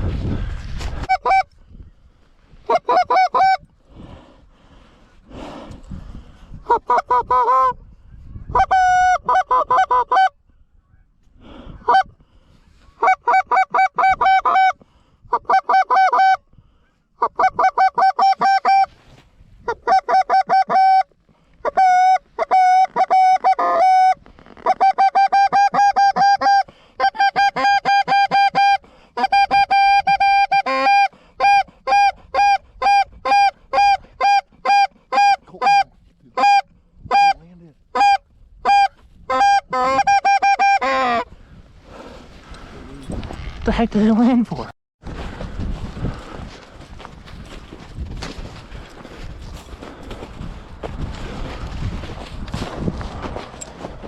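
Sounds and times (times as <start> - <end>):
goose call honks and clucks: 1.0 - 1.6, 2.7 - 3.6, 6.6 - 7.8, 8.5 - 10.4, 11.8 - 12.2, 12.8 - 16.4, 17.2 - 41.3.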